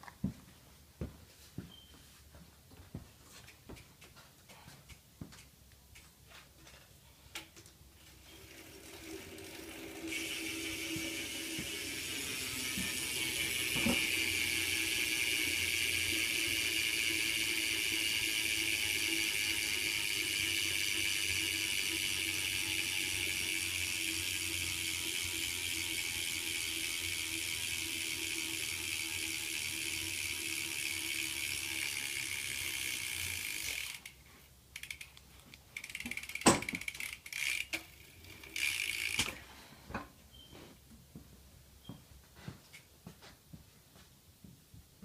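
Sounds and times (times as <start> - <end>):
bicycle hub freewheel buzzing: 8.1 - 35.2, 35.8 - 39.4.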